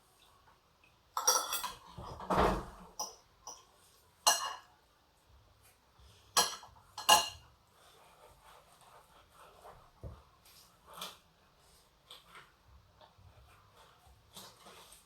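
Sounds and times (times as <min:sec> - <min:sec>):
cutlery clinking against dish: 0:01.2 - 0:04.7, 0:06.3 - 0:07.4.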